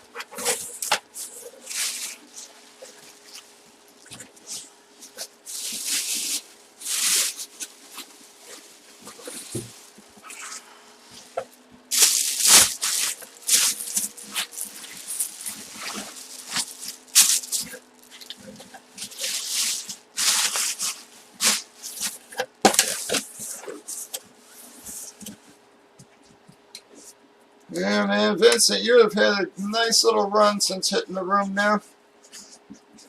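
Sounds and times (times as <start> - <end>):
packaging rustling and scraping: 0.0 - 25.5
faint steady hum: 0.0 - 33.0.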